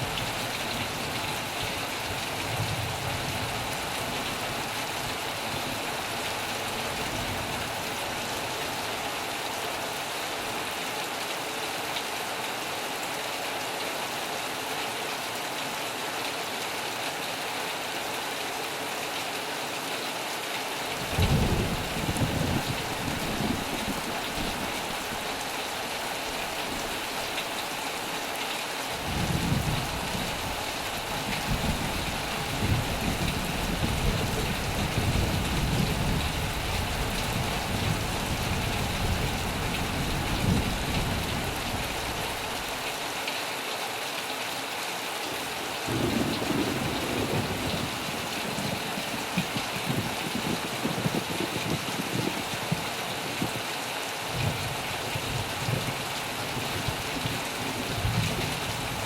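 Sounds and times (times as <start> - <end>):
heavy rain: 0.0 - 59.0
thunder rumbling: 21.0 - 25.3, 29.0 - 42.6, 45.9 - 52.8.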